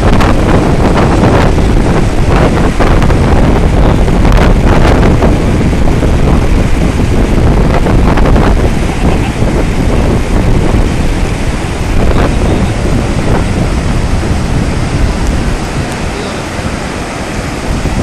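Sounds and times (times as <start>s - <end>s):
floodwater rushing: 0.0s - 18.0s
wind buffeting microphone: 0.0s - 18.0s.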